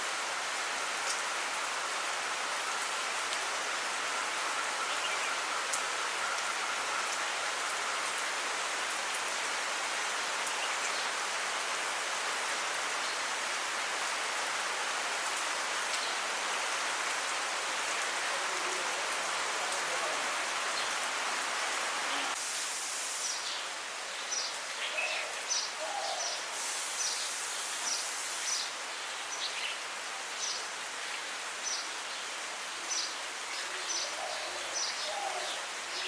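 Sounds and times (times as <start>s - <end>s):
heavy rain falling: 0.0s - 36.0s.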